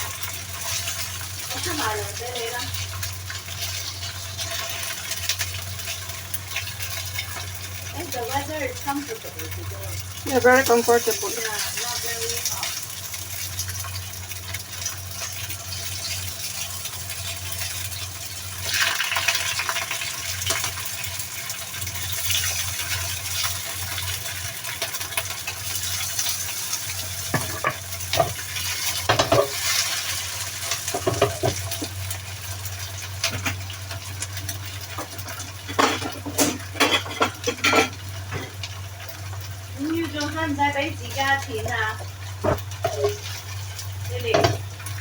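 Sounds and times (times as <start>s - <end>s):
food sizzling in a frying pan: 0.0s - 45.0s
spatula scraping a pan: 0.2s - 7.6s, 34.9s - 38.5s, 42.4s - 44.6s.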